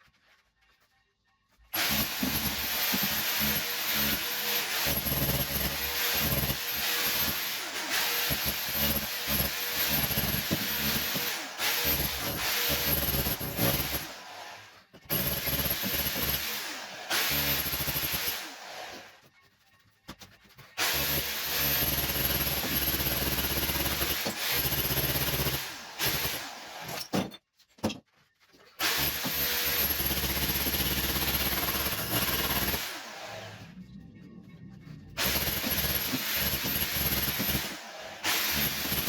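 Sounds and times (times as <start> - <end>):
electric chipping hammer hammering: 1.8 - 14.1, 35.2 - 39.0.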